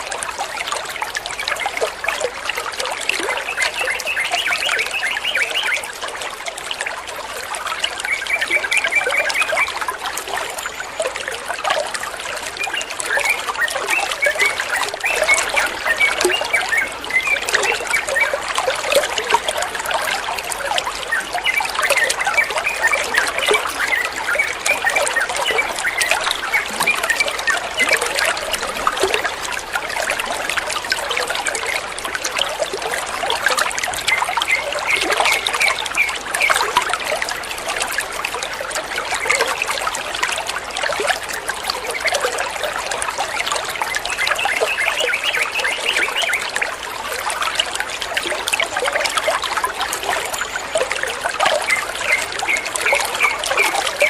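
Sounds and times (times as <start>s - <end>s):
water drips and bubbles: 0.0s - 54.0s
water trickling and splashing: 0.0s - 54.0s.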